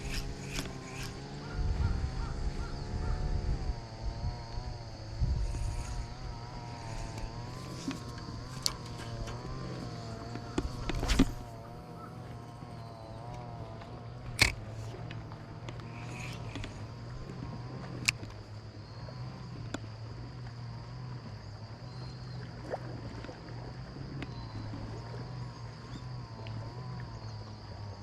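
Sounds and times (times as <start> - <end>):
insect chirring: 0.0 - 22.4
low engine hum: 0.0 - 28.0
sharp clicks: 13.3 - 16.9.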